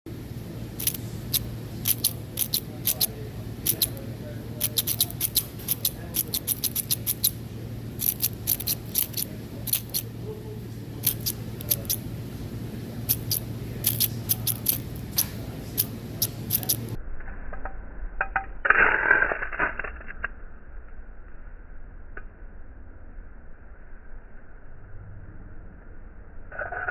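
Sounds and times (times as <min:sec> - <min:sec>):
low steady hum: 0:00.1 - 0:26.9.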